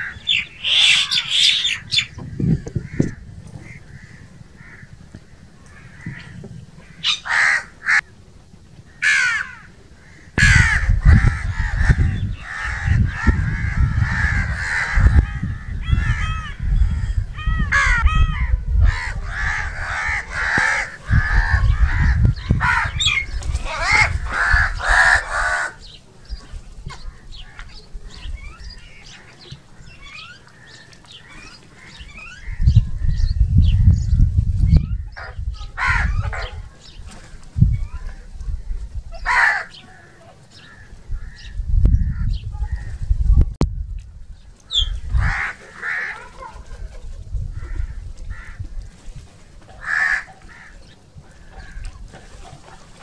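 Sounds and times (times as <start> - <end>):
crows cawing: 0.0 - 5.0, 5.7 - 8.0, 8.9 - 25.9, 39.2 - 41.5, 45.2 - 46.6, 49.8 - 51.9.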